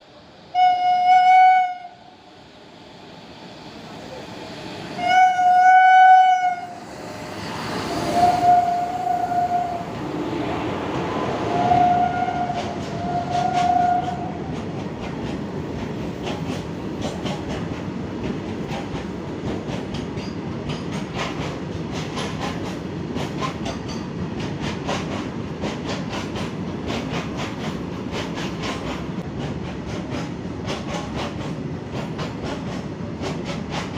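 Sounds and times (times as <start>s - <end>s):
train wagons rumbling past: 0.0s - 33.9s
locomotive horn blasts: 0.5s - 2.0s, 5.0s - 6.8s, 8.2s - 9.8s, 11.6s - 14.3s.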